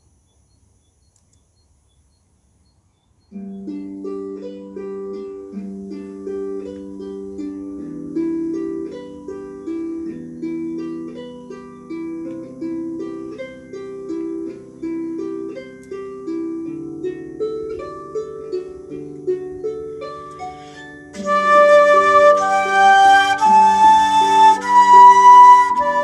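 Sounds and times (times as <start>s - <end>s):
harp plucked arpeggios: 18.9s - 26.0s.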